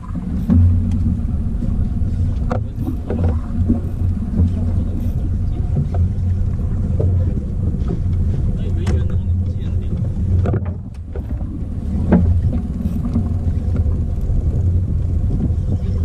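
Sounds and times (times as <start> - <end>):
boat engine droning: 0.0 - 16.0
small knocks: 10.4 - 11.4.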